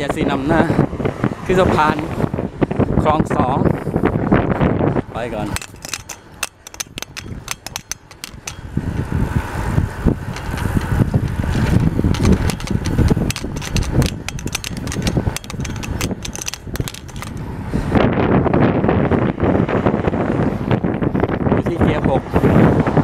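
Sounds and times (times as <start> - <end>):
wind and road rumble: 0.0 - 23.0
sharp clicks and rattles: 5.4 - 17.5.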